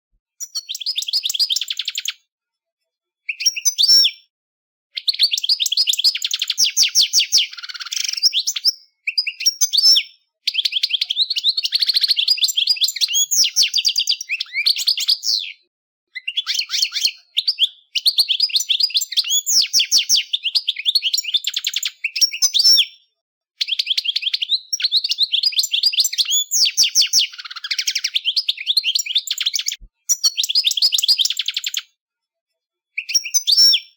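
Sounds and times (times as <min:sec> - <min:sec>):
goldfinch twittering song: 0:00.4 - 0:02.2, 0:23.6 - 0:31.8.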